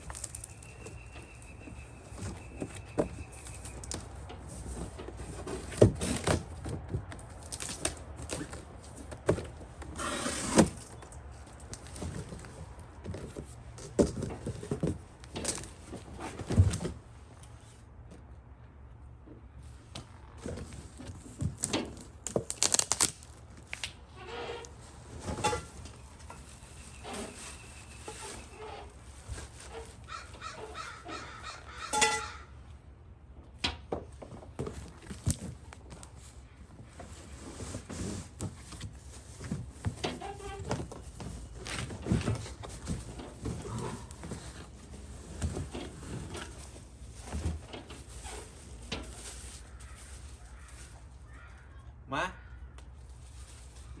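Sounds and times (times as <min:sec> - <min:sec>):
scraping: 0:24.1 - 0:32.5
packaging rustling: 0:48.0 - 0:51.5.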